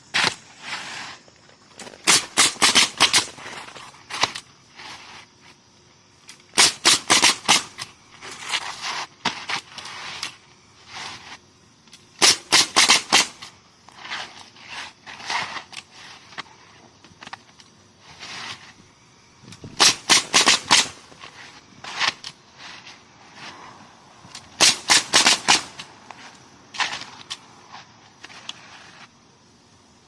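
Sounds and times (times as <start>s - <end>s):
nailer driving nails into shingles: 1.8s - 4.4s, 6.5s - 10.3s, 12.2s - 13.5s, 19.6s - 21.2s, 24.3s - 25.9s.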